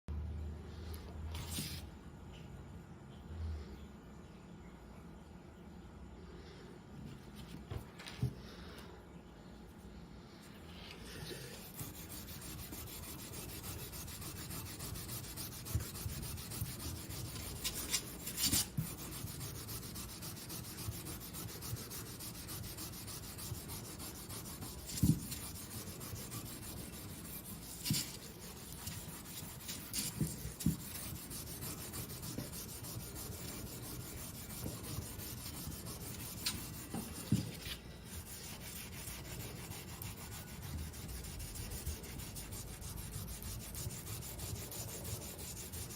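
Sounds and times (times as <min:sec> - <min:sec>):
rubber block rubbing metal: 0:11.7 - 0:45.9.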